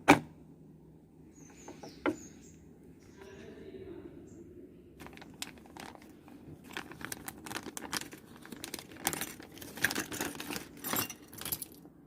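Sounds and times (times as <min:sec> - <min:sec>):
plastic packaging rustling: 0:05.0 - 0:11.8.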